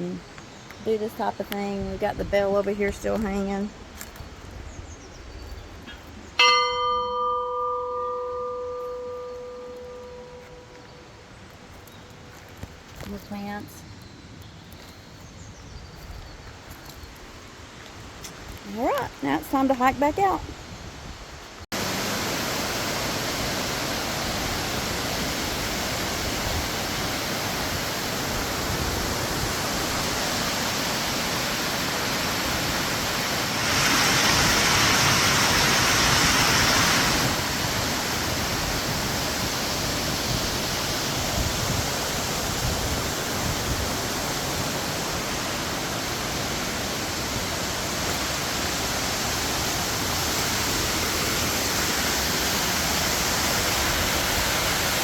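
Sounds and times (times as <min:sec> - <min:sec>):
waterfall rushing: 0:21.8 - 0:55.0.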